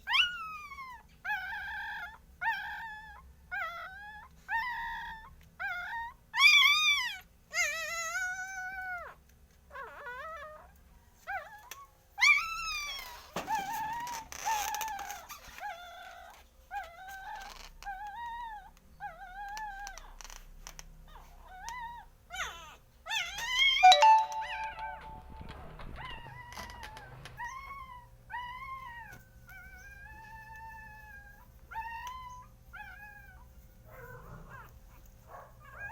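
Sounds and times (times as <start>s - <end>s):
puppies whining and crying: 0.1s - 10.7s, 11.3s - 20.0s.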